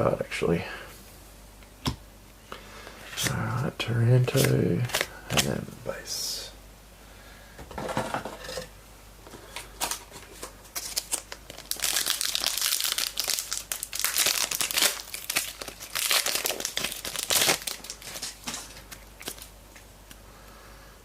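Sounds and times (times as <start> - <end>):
foil wrapper tearing and crinkling: 10.7 - 19.5.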